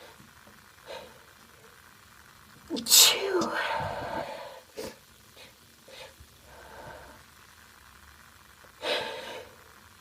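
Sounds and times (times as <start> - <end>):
woman sneezing: 2.7 - 3.5.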